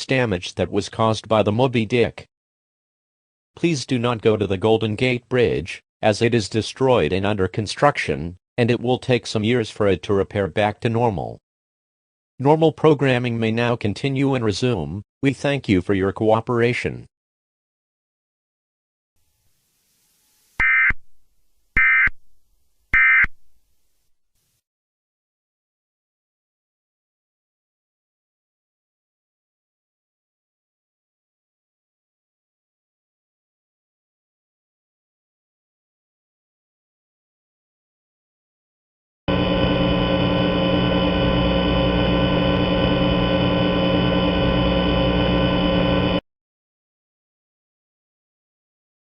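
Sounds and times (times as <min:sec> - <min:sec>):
loud droning tone: 0:39.3 - 0:46.2.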